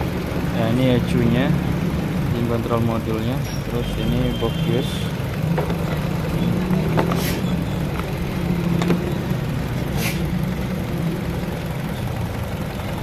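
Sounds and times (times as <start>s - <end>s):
car engine idling: 0.0s - 13.0s
brief hiss: 10.0s - 10.2s.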